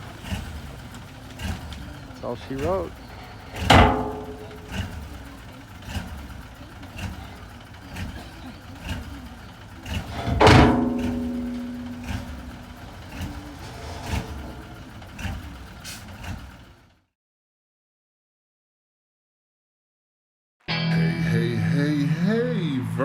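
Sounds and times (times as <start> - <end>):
engine running: 0.0 - 17.0
sharp knocks: 3.6 - 5.0, 10.1 - 14.8
loud ringing strike: 3.7 - 5.0, 10.2 - 15.1.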